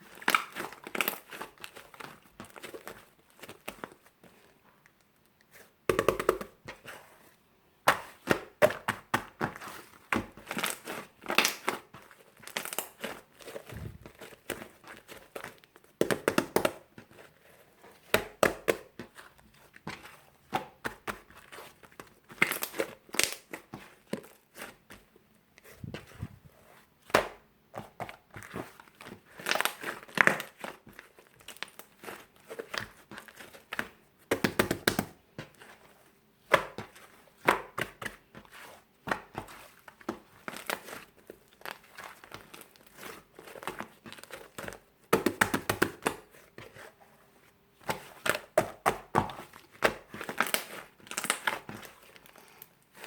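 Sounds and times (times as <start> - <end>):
paper and tape crinkling: 28.7 - 33.8.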